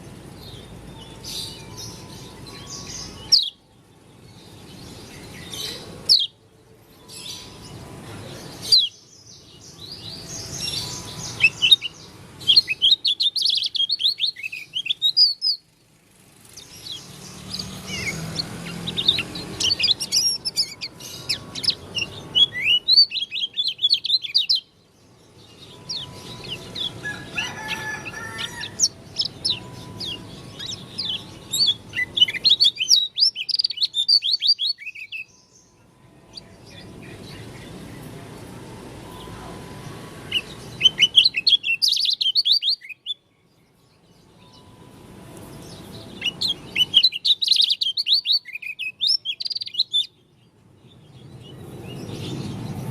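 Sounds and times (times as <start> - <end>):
bird chirping twitters: 0.0 - 38.2, 38.9 - 52.9.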